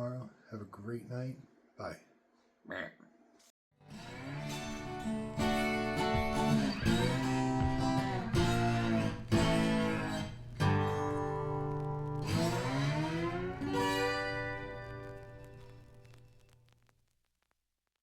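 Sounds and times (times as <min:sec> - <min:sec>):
acoustic guitar strumming chords: 0:03.8 - 0:15.8.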